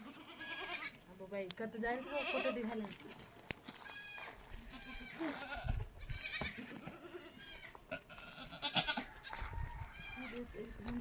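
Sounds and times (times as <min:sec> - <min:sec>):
goats bleating: 0:00.0 - 0:01.0, 0:02.0 - 0:02.7, 0:03.8 - 0:10.5.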